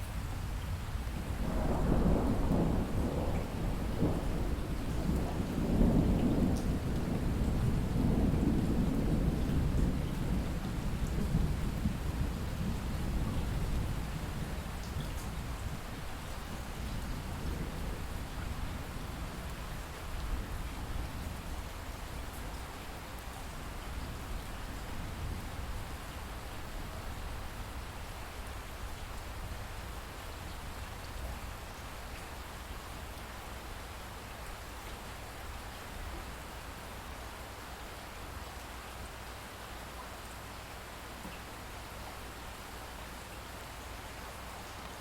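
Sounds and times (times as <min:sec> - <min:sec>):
steady light rain: 0:00.0 - 0:45.0
distant thunder rumble: 0:01.4 - 0:15.6.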